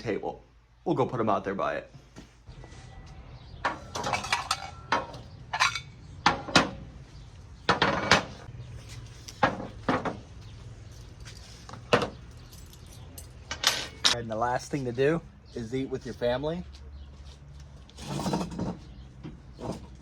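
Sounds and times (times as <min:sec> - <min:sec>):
hard objects clinking: 0:03.7 - 0:06.4, 0:10.9 - 0:14.2.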